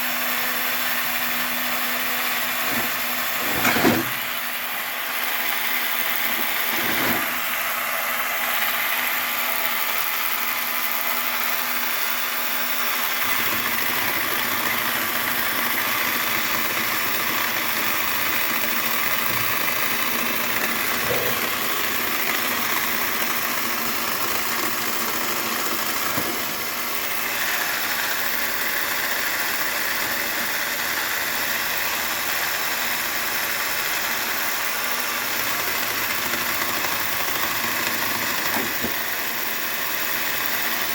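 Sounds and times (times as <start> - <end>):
engine running steadily: 2.1 - 24.7.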